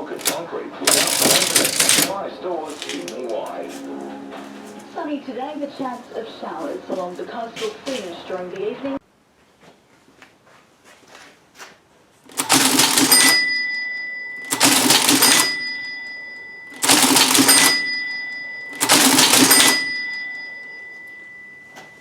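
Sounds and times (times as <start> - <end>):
cash register mechanical clatter: 0.0 - 2.2, 2.8 - 3.3, 12.3 - 22.0
cash register bell ringing: 0.0 - 3.6, 12.3 - 22.0.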